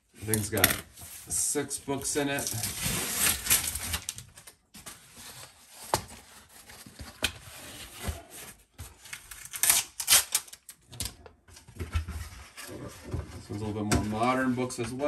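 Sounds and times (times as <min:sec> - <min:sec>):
cardboard box being opened: 0:04.8 - 0:09.2.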